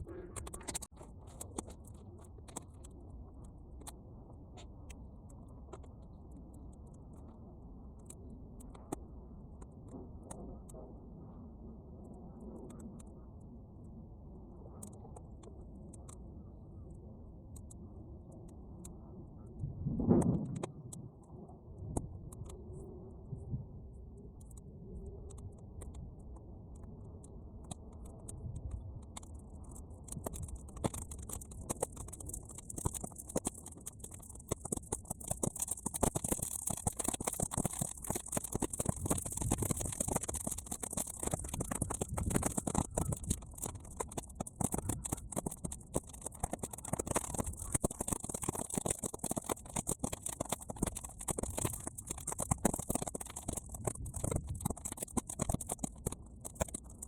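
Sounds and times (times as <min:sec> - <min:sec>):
bonfire crackling and popping: 0:00.2 - 0:04.0, 0:25.3 - 0:57.0
wind on microphone: 0:18.9 - 0:26.3, 0:30.1 - 0:45.8, 0:53.6 - 0:54.8.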